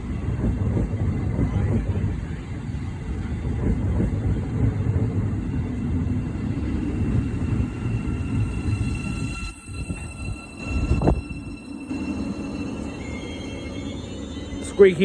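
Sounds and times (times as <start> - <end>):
train rumbling on track: 0.0 - 15.0.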